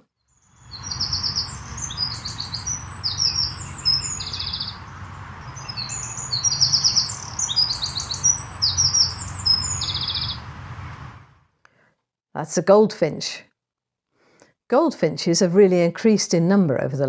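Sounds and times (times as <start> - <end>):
songbird twittering and trills: 0.2 - 11.0.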